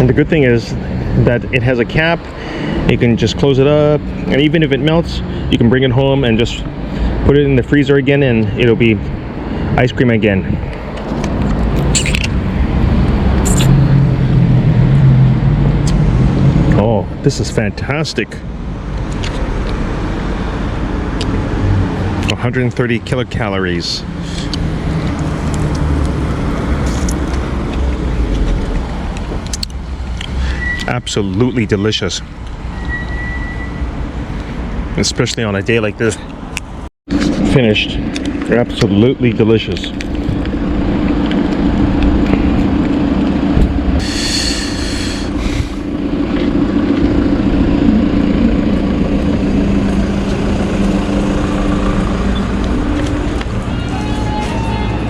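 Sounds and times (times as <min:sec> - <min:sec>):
road traffic rumble and hiss: 0:00.0 - 0:55.0
low machine hum: 0:40.0 - 0:53.8.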